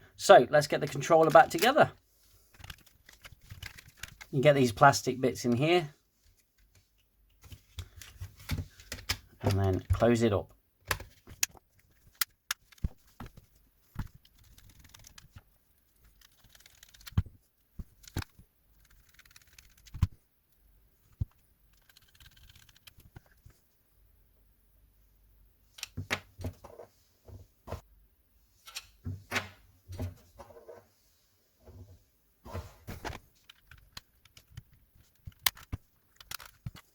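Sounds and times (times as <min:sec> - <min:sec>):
plastic parts clicking and knocking: 0:02.5 - 0:04.4, 0:06.6 - 0:10.2, 0:10.8 - 0:20.2, 0:21.0 - 0:23.6, 0:32.9 - 0:36.9.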